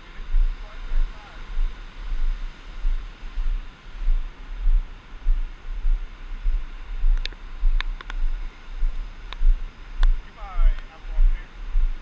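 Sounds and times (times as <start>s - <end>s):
hiss of wind and surf: 0.0s - 12.0s
wind buffeting microphone: 0.0s - 12.0s
sharp ticks: 7.0s - 11.3s.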